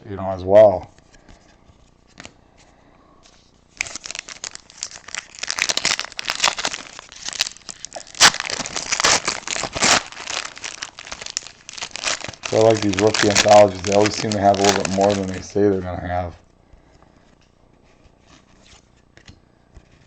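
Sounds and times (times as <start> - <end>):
foil wrapper crinkling and tearing: 3.7 - 15.7.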